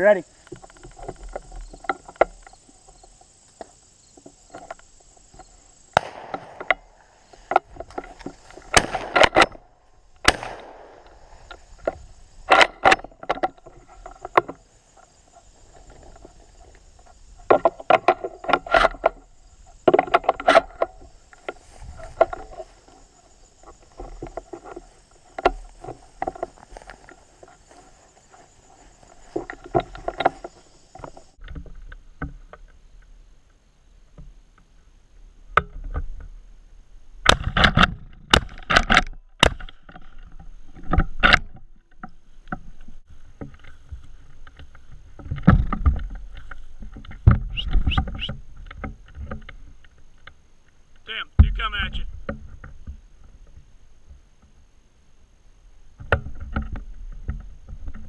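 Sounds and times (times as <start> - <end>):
high insect buzz: 0.0 - 31.4
knocks and rustles: 0.4 - 32.8, 37.2 - 50.4, 56.0 - 58.0.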